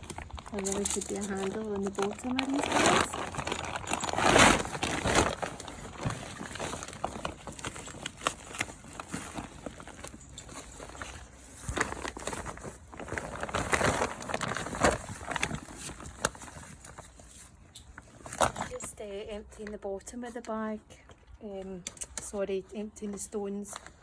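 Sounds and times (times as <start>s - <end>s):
bag rustling: 0.0s - 19.0s.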